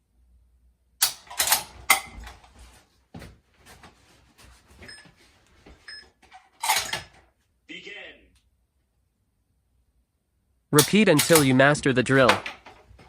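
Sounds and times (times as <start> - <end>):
rifle rattling: 1.0 - 2.5, 6.3 - 7.2, 10.8 - 11.6, 12.2 - 13.0.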